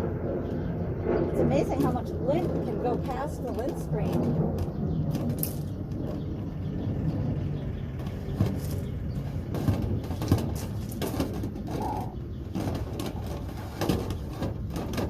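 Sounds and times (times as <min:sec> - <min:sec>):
low rumble: 0:00.0 - 0:15.0
brush rod knocking and scraping: 0:08.0 - 0:15.0.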